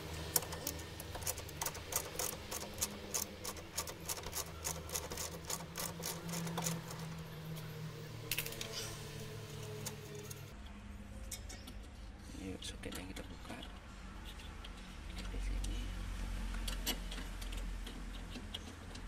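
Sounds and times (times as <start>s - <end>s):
sharp irregular plastic clicks: 0.2s - 7.1s, 16.5s - 19.0s.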